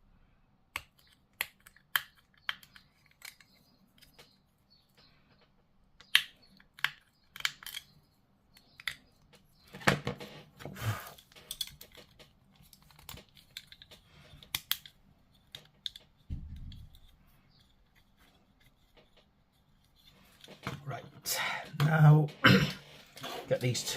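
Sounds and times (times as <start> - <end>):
plastic snips and clicks: 6.0 - 7.9, 11.3 - 17.1.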